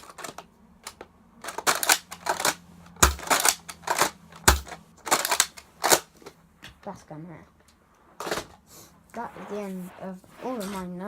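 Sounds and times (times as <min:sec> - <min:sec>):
plastic toy clicking and rattling: 0:00.0 - 0:06.3
sharp plastic knocks: 0:00.0 - 0:06.8.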